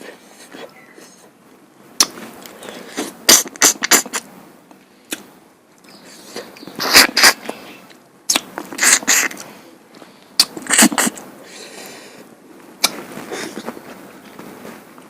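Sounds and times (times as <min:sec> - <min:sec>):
wet mouth smacks and clicks: 0:05.1 - 0:06.0, 0:08.3 - 0:09.4.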